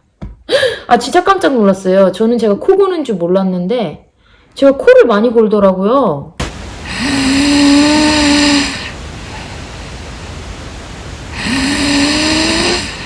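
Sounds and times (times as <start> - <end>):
steady hiss: 6.4 - 13.0
woman snoring: 6.8 - 13.0.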